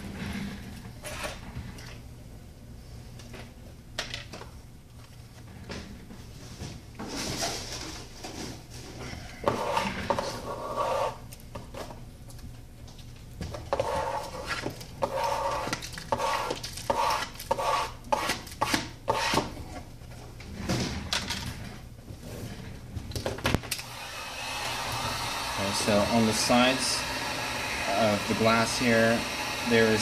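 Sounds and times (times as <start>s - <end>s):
tool scraping glass: 9.4s - 11.2s.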